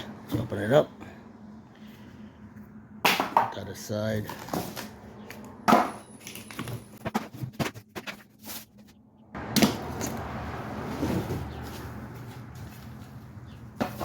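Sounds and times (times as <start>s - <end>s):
cardboard rustling: 6.2s - 9.0s.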